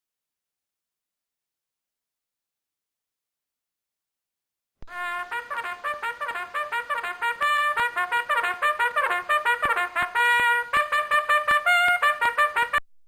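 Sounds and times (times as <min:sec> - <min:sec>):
fast brass melody: 0:04.9 - 0:12.8.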